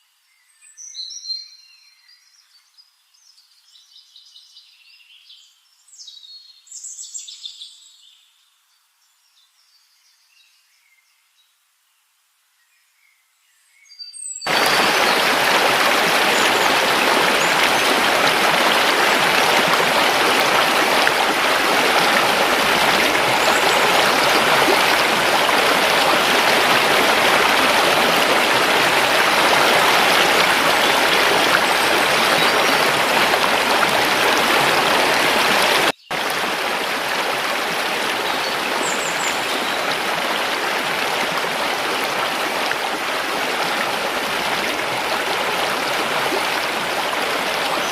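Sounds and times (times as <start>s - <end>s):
stream water rushing: 14.5s - 47.9s.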